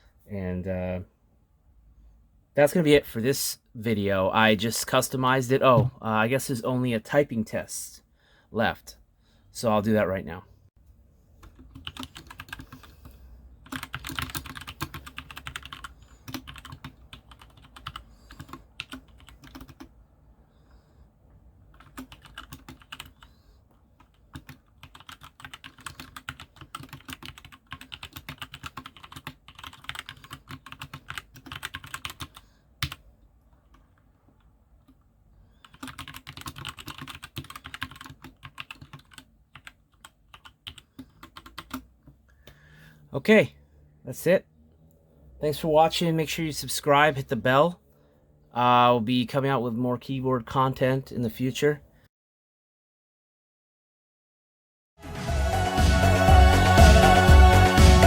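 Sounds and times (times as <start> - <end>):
mechanical keyboard typing: 11.4 - 12.8, 13.6 - 19.9, 21.7 - 23.3, 24.0 - 33.0, 35.6 - 41.8.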